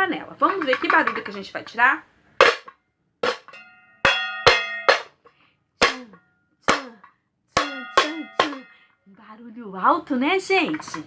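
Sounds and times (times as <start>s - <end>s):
metal pot lids clanging: 0.0s - 1.8s, 2.4s - 5.2s, 7.6s - 8.8s, 10.6s - 11.0s.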